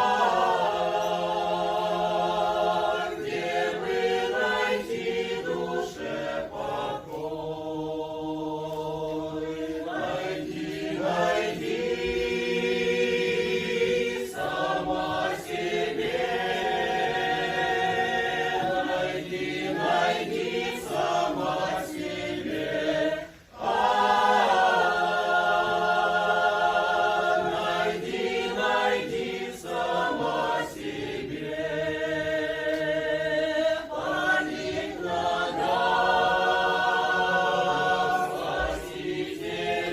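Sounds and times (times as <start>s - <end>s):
vocal ensemble singing: 0.0s - 39.9s.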